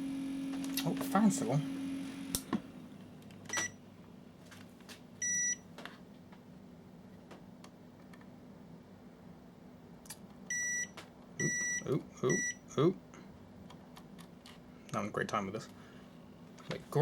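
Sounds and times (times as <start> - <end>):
multimeter continuity beeps: 5.2 - 5.6, 10.5 - 12.6.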